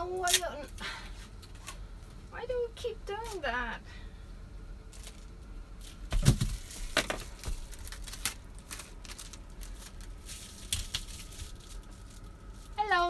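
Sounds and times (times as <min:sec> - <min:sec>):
crinkling rustles: 0:04.9 - 0:13.0.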